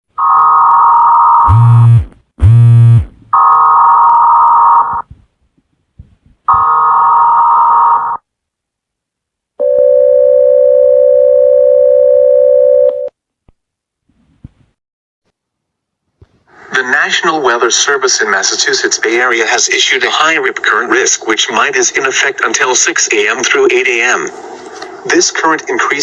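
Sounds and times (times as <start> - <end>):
harsh electronic header bursts: 1.5 - 3.3
steady attention tone: 1.5 - 3.4.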